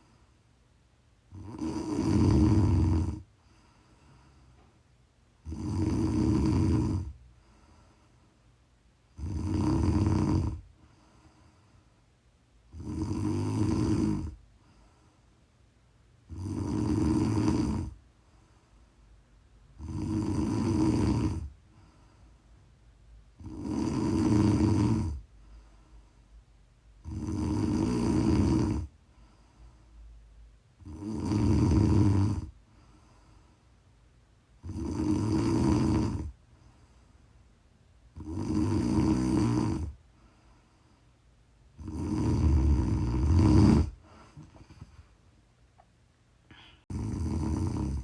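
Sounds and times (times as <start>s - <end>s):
woman snoring: 1.3s - 3.3s, 5.4s - 7.2s, 9.1s - 10.7s, 12.7s - 14.4s, 16.3s - 18.0s, 19.8s - 21.5s, 23.4s - 25.2s, 27.0s - 28.9s, 30.8s - 32.6s, 34.6s - 36.4s, 38.2s - 40.0s, 41.8s - 44.9s, 46.5s - 48.0s.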